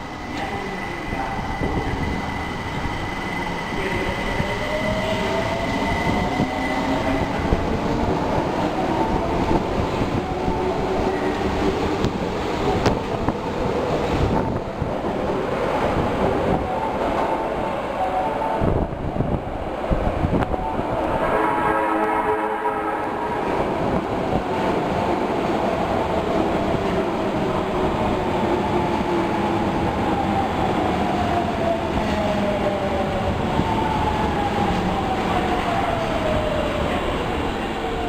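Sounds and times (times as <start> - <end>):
subway train running: 0.0 - 38.0
whine falling in pitch: 20.5 - 24.7
train horn: 20.5 - 24.9.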